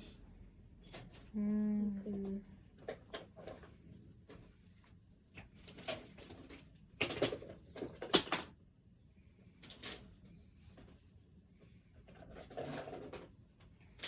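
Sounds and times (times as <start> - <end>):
knocks and rustles of handling: 2.0 - 8.6, 9.5 - 14.0.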